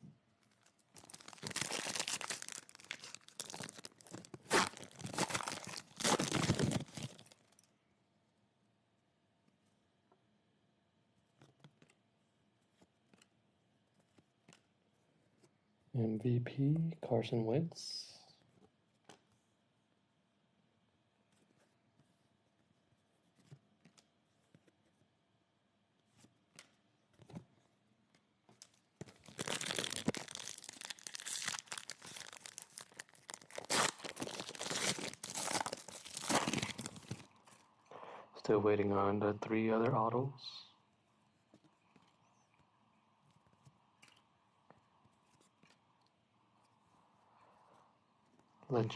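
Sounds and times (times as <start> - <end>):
wrapper torn and crinkled: 0.9 - 7.5, 29.0 - 37.6.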